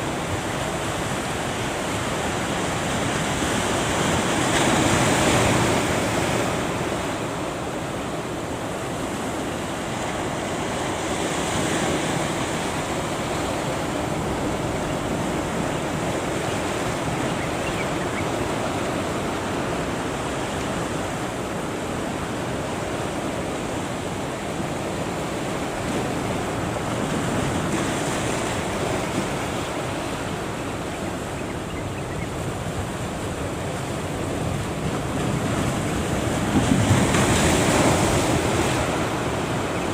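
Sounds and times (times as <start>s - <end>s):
heavy surf breaking: 0.0s - 39.9s
wind on microphone: 10.3s - 39.9s.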